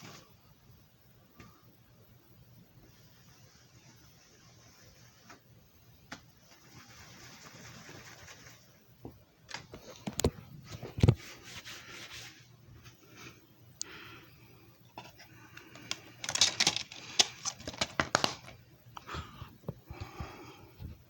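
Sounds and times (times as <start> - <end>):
soft rubbing hiss: 2.4 - 9.2, 9.8 - 16.3
handling clicks and knocks: 15.6 - 18.6.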